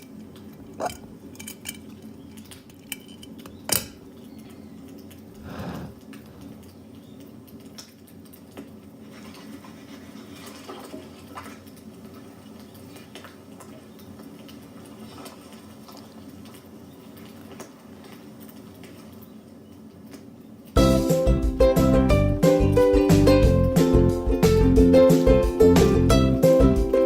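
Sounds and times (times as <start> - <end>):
wood fire crackling: 0.0 - 21.4.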